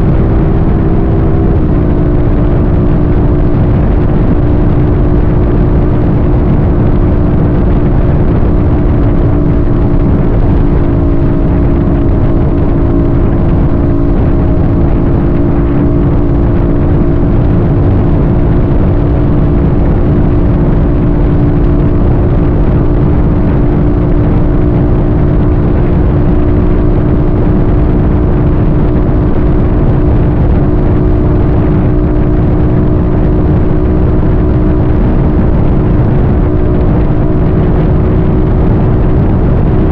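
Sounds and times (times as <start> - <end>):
road and wind noise: 0.0 - 39.9
vehicle engine hum: 0.0 - 39.9.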